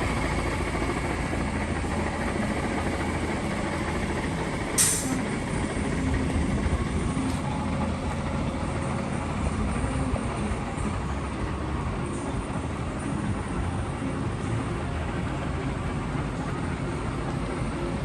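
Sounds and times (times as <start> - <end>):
diesel truck engine running: 0.0 - 18.0
air hiss: 4.8 - 5.2.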